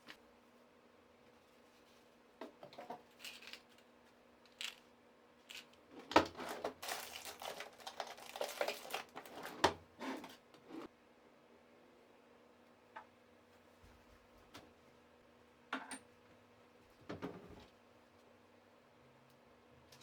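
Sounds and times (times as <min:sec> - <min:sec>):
rustling and crinkling: 0:01.3 - 0:04.9, 0:05.5 - 0:10.9.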